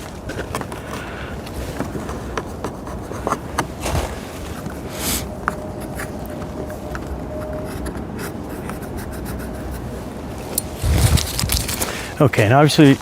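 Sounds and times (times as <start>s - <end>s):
pad wiping a surface: 2.0s - 10.5s.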